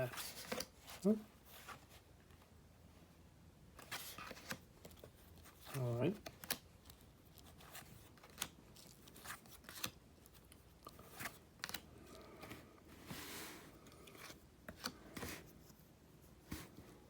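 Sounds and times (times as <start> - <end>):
cards clicking and tapping: 3.8 - 12.6.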